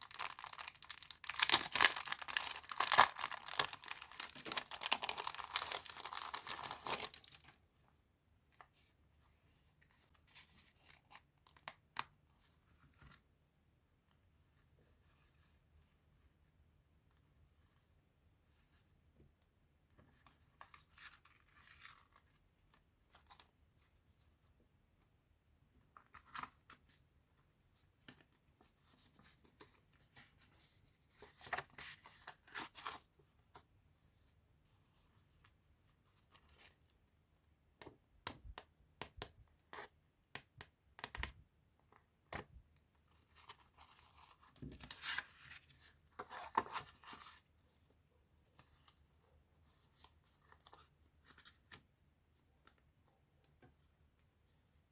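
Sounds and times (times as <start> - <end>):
paper and plastic rustling: 0.0 - 7.5.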